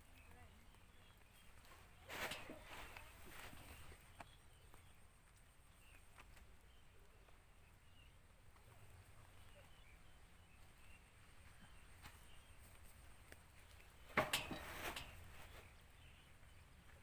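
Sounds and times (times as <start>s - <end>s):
faint low outdoor rumble: 0.0s - 17.0s.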